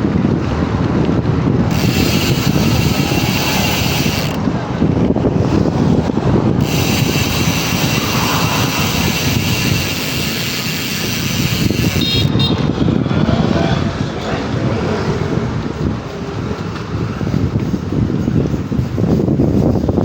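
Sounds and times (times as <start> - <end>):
road rumble: 0.0 - 20.0
wind noise on microphone: 0.0 - 20.0
bicycle freehub buzzing: 0.3 - 5.0, 6.2 - 13.4.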